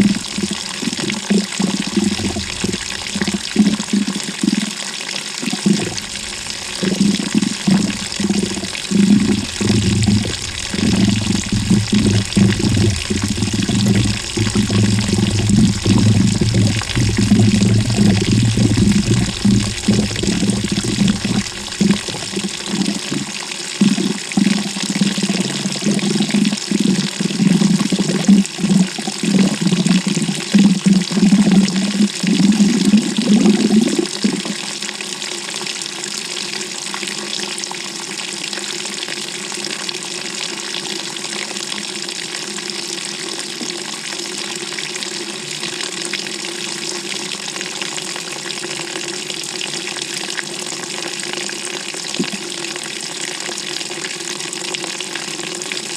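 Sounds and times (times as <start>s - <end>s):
water sloshing in washing machine: 0.0s - 3.9s, 5.6s - 24.6s.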